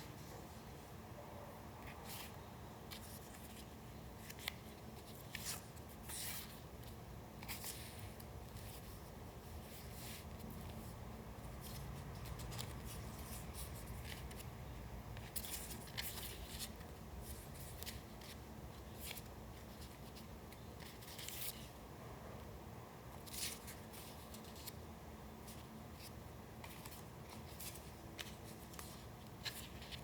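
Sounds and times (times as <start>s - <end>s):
paper rustling and crackling: 15.2s - 21.7s, 25.4s - 30.0s.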